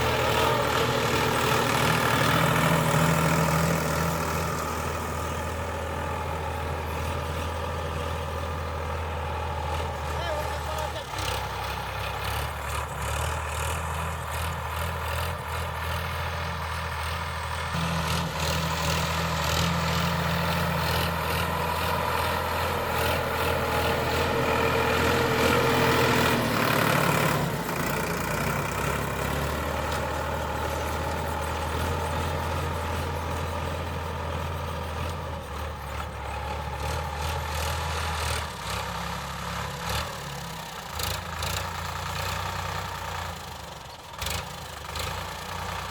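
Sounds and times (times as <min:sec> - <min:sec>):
tractor diesel engine running: 0:00.0 - 0:45.9.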